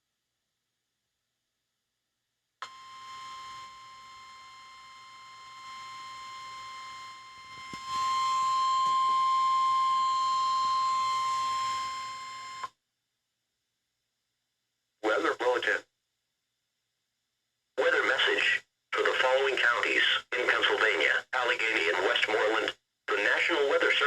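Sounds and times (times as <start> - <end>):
steady high alarm tone: 2.6 - 12.7.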